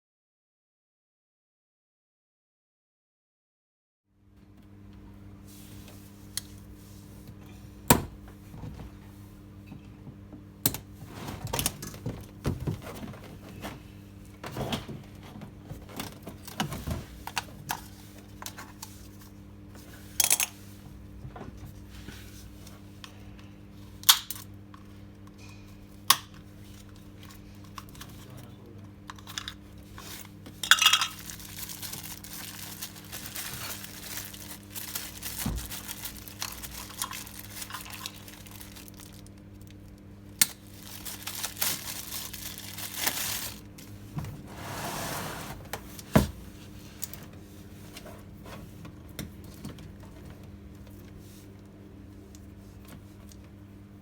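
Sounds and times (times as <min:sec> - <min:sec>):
rustling and scraping: 0:11.0 - 0:20.9, 0:40.8 - 0:51.5.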